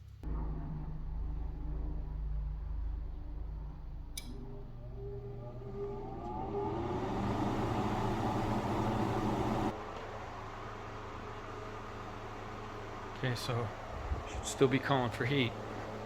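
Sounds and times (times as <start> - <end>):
blower fan motor whirring: 0.0 - 16.0
heater switch click: 4.1 - 4.6.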